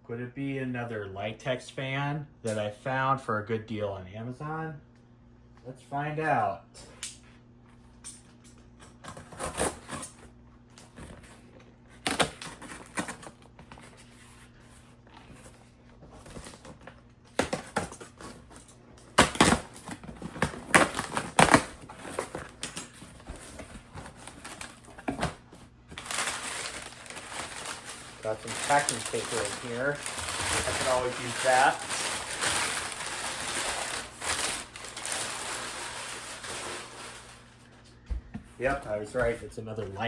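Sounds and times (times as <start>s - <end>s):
cardboard rustling: 10.8s - 40.0s.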